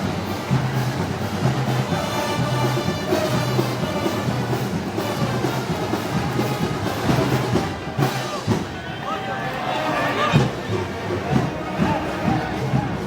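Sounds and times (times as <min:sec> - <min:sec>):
steady drum beats: 0:00.0 - 0:09.2, 0:10.2 - 0:13.0
brass band playing: 0:00.0 - 0:13.0.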